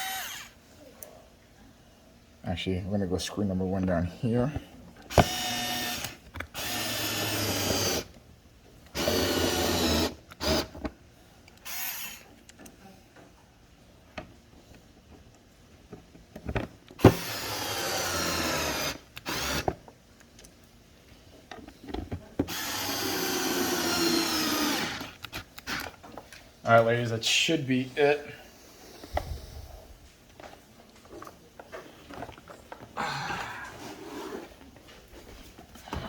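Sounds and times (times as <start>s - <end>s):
cordless drill driving screws: 0.0s - 0.6s, 5.1s - 8.1s, 8.9s - 10.7s, 11.6s - 12.3s, 17.0s - 19.8s, 22.5s - 25.9s.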